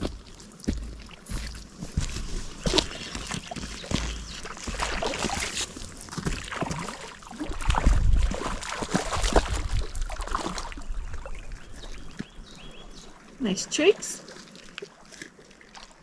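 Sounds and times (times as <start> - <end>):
water sloshing and splashing: 0.0 - 16.0
wind buffeting microphone: 7.4 - 13.2.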